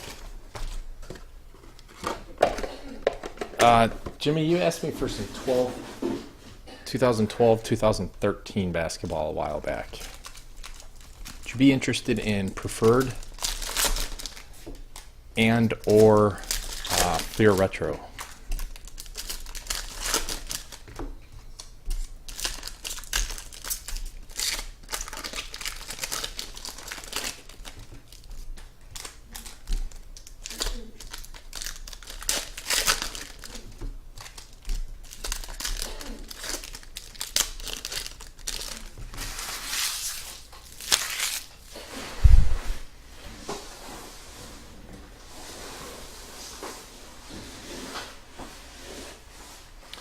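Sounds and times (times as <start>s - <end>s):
card pack wrappers crinkling: 9.0s - 41.7s.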